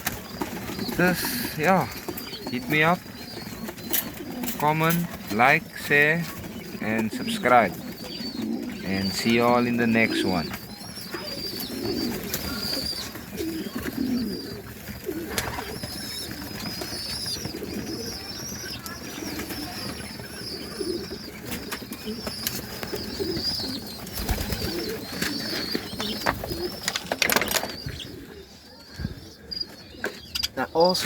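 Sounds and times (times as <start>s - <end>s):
pigeons cooing: 0.0s - 31.0s.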